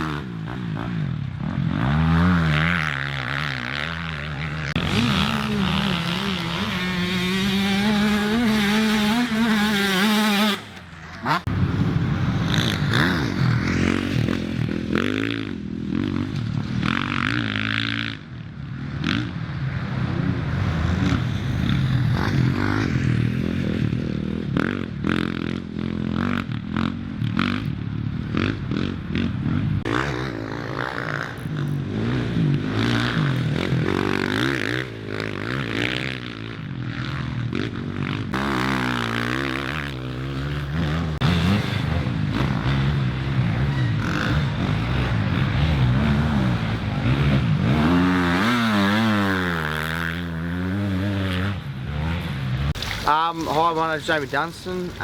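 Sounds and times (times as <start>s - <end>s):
motorcycles revving: 0.0s - 55.0s.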